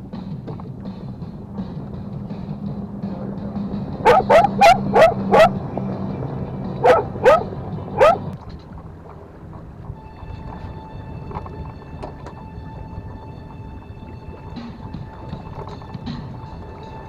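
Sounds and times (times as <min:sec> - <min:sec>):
dog barking: 0:04.0 - 0:05.6, 0:06.8 - 0:08.3.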